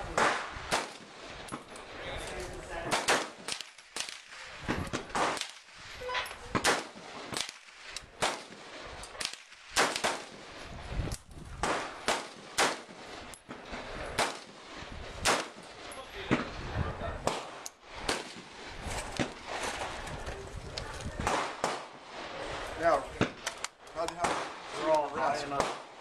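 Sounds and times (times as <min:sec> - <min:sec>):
rifle gunshots: 0:00.2 - 0:01.1, 0:02.8 - 0:05.6, 0:06.5 - 0:10.4, 0:11.6 - 0:13.0, 0:14.1 - 0:14.6, 0:15.2 - 0:15.6, 0:21.2 - 0:21.9.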